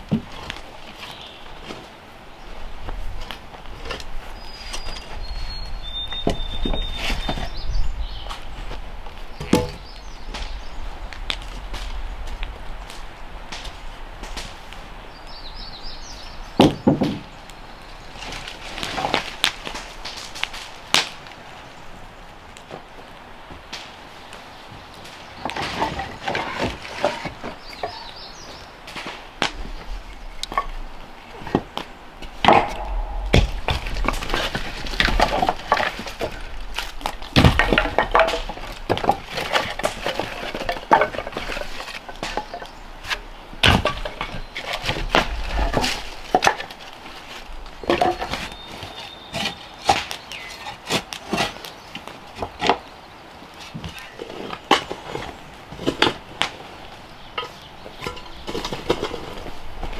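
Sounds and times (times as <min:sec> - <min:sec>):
scraping and clinking: 0:57.4 - 0:59.9.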